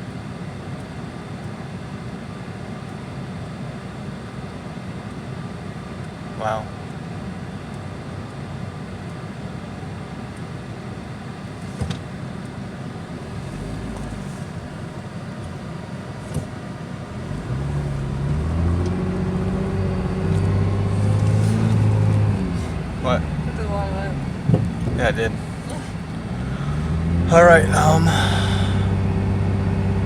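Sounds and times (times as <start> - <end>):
road rumble inside car: 0.0 - 30.0
car engine accelerating: 12.9 - 15.2, 16.2 - 30.0.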